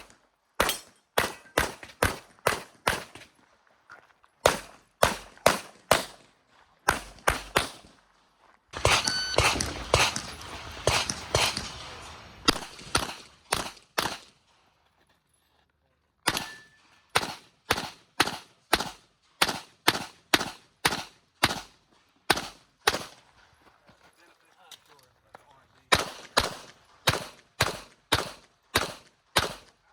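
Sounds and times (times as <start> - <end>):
pistol shots: 0.0 - 3.3, 4.4 - 6.2, 6.9 - 8.0, 8.8 - 14.5, 16.3 - 23.2, 25.9 - 29.8.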